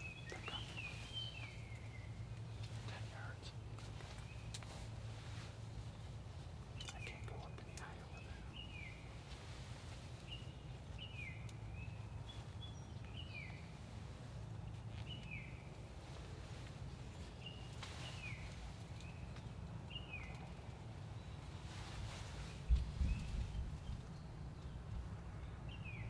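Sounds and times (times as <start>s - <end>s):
small bird chirping: 0.0s - 4.8s, 6.7s - 9.3s
steady low rumble: 0.0s - 26.0s.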